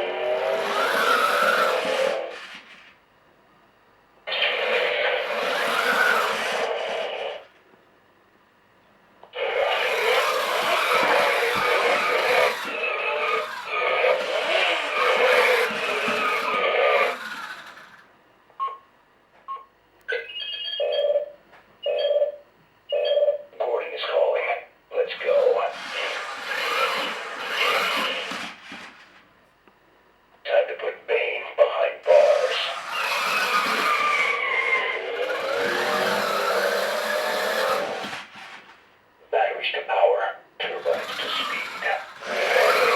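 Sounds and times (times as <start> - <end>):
engine-like toy sound effect: 0.0 - 2.9, 4.3 - 7.5, 9.3 - 18.1, 25.1 - 29.1, 32.0 - 38.7, 40.6 - 42.9.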